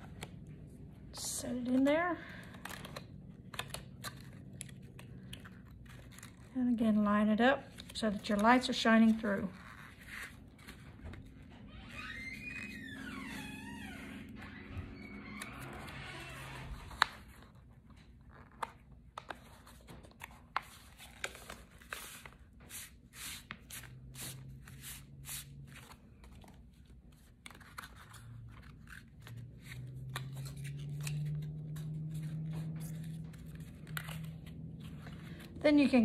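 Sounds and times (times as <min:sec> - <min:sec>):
paper rustling: 0:16.6 - 0:36.0.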